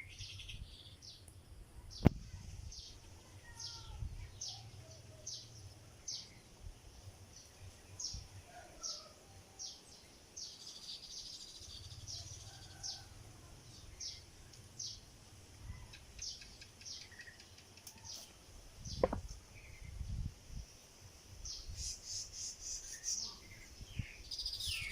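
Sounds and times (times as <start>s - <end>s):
small birds chirping: 0.0s - 20.8s, 21.4s - 24.9s
sharp knock: 19.0s - 19.2s.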